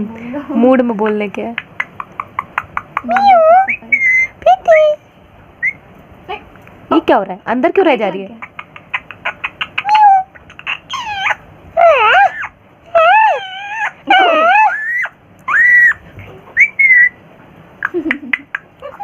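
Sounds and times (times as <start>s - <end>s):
parrot clicking: 0.9s - 3.4s, 8.2s - 11.2s
parrot calls and whistles: 1.8s - 4.4s, 5.6s - 5.9s, 8.4s - 17.2s.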